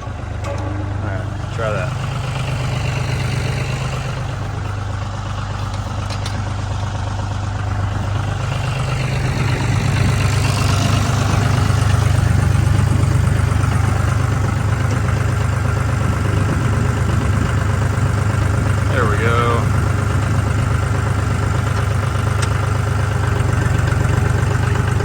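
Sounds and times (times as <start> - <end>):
engine running: 0.0 - 25.0.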